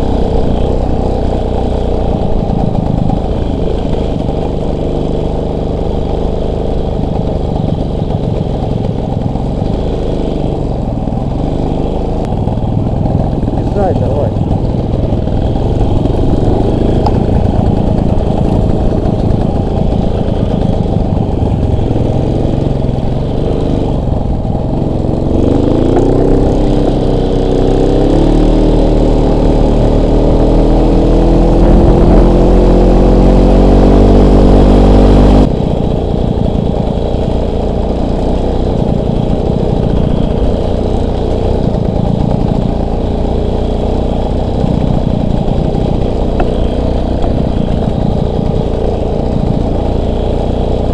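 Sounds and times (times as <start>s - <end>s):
motorcycle engine accelerating: 0.0s - 50.9s.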